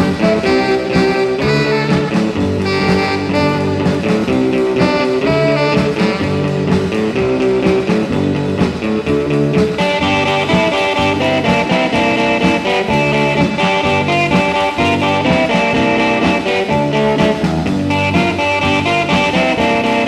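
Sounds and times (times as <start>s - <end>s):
instrumental rock and roll music: 0.0s - 20.0s.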